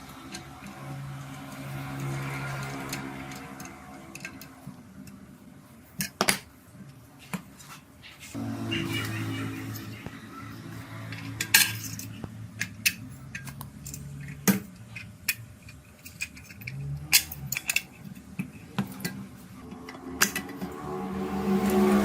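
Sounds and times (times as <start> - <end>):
quiet background music: 8.4 - 22.0
small metal parts clinking: 11.1 - 19.2.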